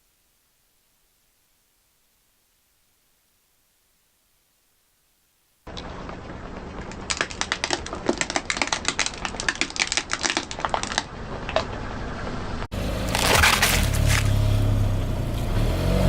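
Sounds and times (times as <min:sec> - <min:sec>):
vehicle low rumble: 0:05.7 - 0:16.0
tyre crushing crunchy objects: 0:12.8 - 0:14.9.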